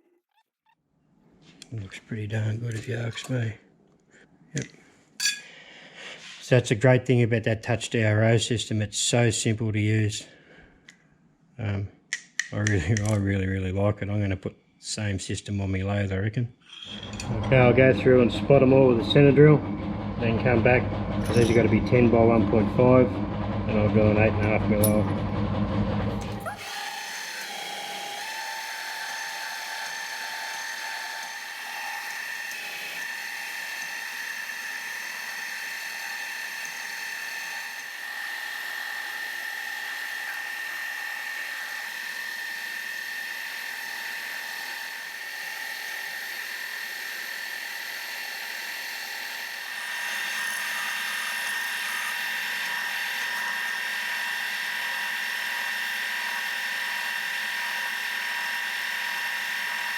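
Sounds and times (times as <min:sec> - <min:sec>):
milling machine gear whine: 0:16.7 - 0:59.9.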